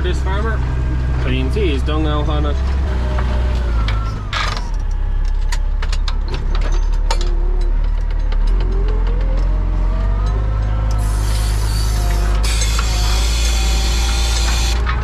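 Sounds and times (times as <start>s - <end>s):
machinery rattling and clicking: 0.0s - 15.0s
tractor engine running: 0.0s - 15.0s
rising whine: 8.8s - 15.0s.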